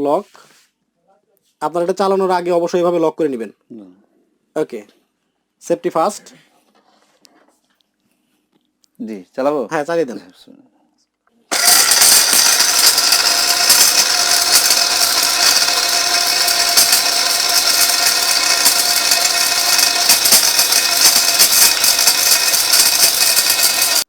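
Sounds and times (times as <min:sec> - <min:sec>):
spice grinder whirring: 0:11.5 - 0:24.0.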